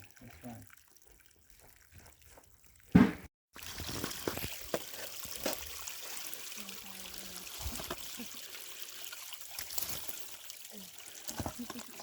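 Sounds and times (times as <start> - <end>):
water running and splashing: 0.0 - 3.0, 3.6 - 12.0
loud thump: 3.0 - 3.3.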